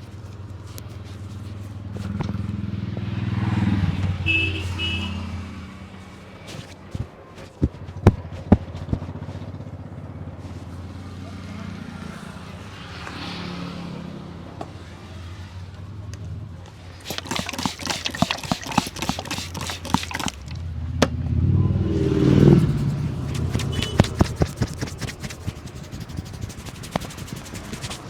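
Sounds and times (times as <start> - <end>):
low rumble: 20.7 - 23.3.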